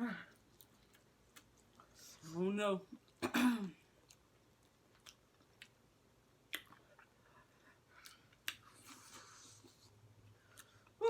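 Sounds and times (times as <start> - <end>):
person chewing: 0.3 - 2.2, 4.0 - 5.8, 6.4 - 11.0
lip smacks: 6.4 - 7.2, 7.9 - 9.9.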